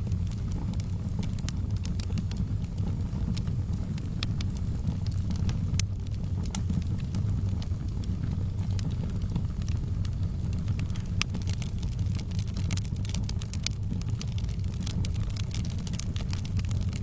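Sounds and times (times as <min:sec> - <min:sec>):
fire crackling and popping: 0:00.0 - 0:17.0
fire rumbling: 0:00.0 - 0:17.0.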